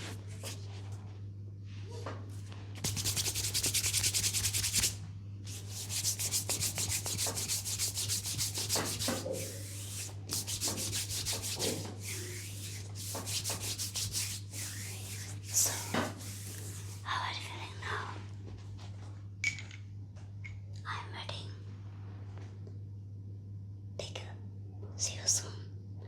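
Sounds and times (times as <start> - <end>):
steady low hum: 0.0 - 26.0
hands rubbing briskly: 2.8 - 17.1.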